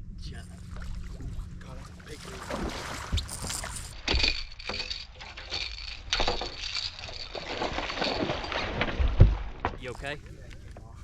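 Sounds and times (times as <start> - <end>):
clattering knocks in a boat: 7.5 - 9.9.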